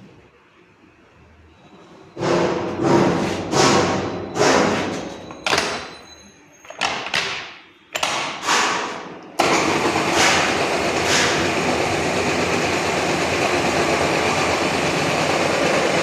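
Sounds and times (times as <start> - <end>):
short mechanical bursts: 8.4 - 15.2
drilling machine running: 9.4 - 16.0.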